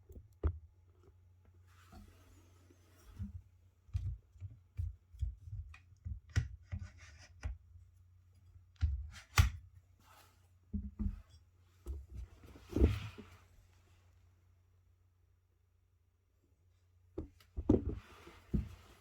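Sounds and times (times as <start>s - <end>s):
objects handled by hand: 8.3s - 13.5s, 17.2s - 19.0s.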